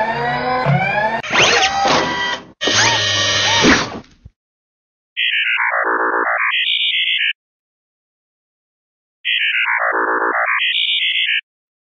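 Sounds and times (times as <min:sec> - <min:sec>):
synthesized robot bleeps: 0:02.6 - 0:03.7, 0:09.3 - 0:11.4.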